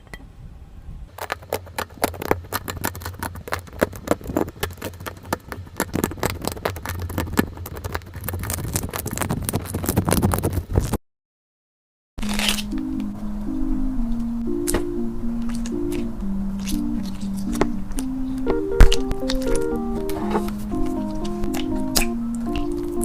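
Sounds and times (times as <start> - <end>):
slime clicking and popping: 1.2 - 10.0, 15.4 - 23.0
steady low hum: 12.2 - 23.0.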